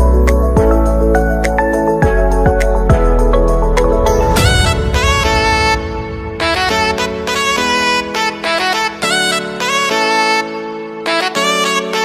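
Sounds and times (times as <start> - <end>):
sustained chords: 3.4 - 8.7
deep drum hits: 3.8 - 8.8.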